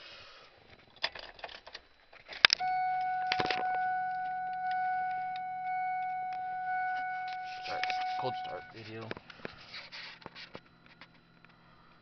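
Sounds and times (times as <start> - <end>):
car keys rattling and clicking: 1.0 - 11.6
high electronic warning tone: 2.6 - 9.0.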